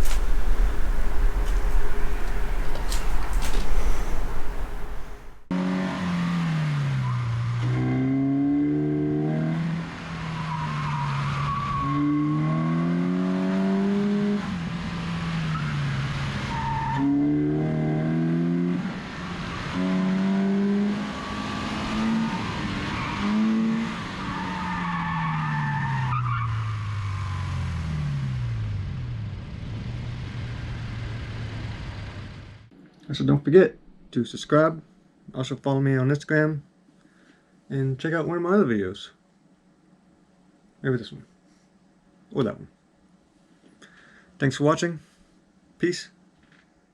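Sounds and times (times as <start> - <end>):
tires squealing: 0.0 - 8.5, 9.4 - 14.5, 15.2 - 28.1
car engine revving: 0.0 - 10.3, 17.0 - 24.3.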